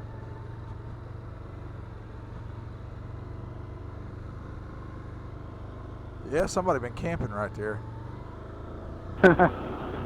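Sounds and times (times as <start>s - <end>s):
quad bike engine running: 7.0s - 10.0s.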